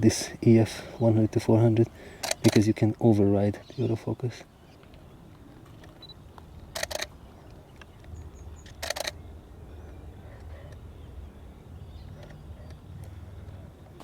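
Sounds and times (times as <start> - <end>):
camera shutter clicks: 2.2 - 2.6, 5.8 - 7.1, 8.6 - 9.2.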